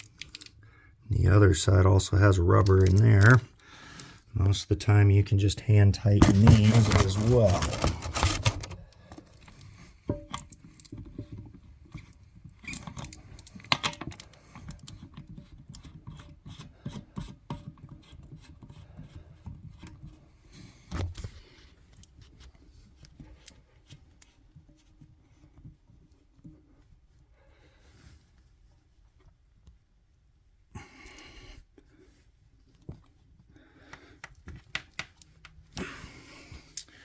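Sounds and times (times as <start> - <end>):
coupling nut clicking and scraping: 0.0 - 0.6, 2.5 - 4.2, 6.0 - 20.2.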